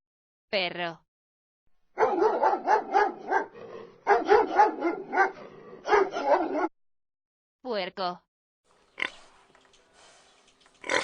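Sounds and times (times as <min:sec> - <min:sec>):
dog barking: 0:02.0 - 0:06.7.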